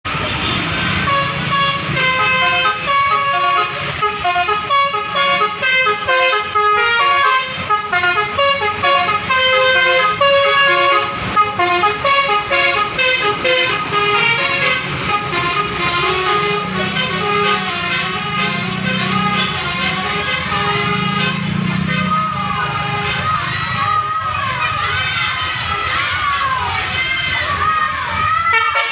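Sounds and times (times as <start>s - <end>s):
musical air horn playing tune: 1.0s - 23.4s, 28.5s - 28.9s.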